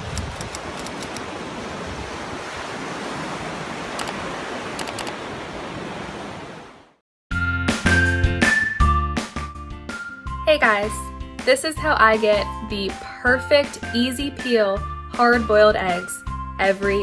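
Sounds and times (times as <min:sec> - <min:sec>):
music: 0:07.3 - 0:17.0.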